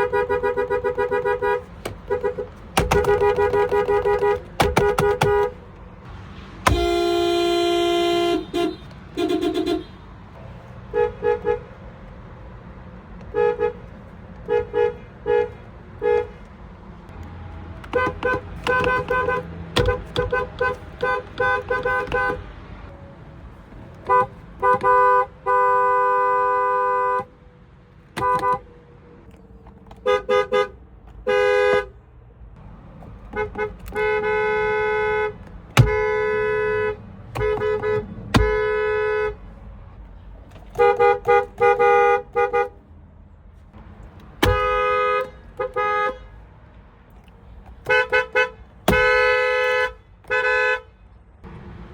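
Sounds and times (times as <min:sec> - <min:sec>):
two-note car horn honking: 0:06.6 - 0:10.0.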